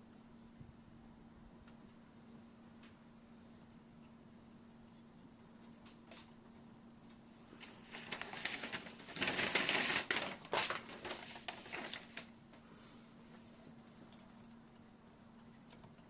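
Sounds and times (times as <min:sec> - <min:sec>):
crinkling and rustling: 0:07.1 - 0:12.7.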